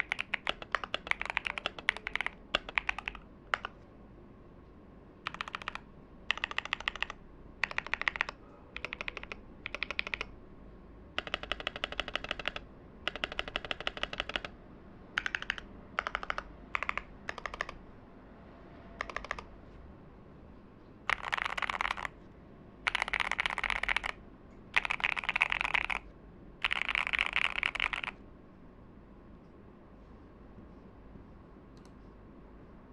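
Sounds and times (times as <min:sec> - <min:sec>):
mechanical keyboard typing: 0:00.0 - 0:03.8, 0:05.2 - 0:10.3, 0:11.2 - 0:14.6, 0:15.2 - 0:17.8, 0:19.0 - 0:19.5, 0:21.1 - 0:22.2, 0:22.8 - 0:26.0, 0:26.6 - 0:28.2.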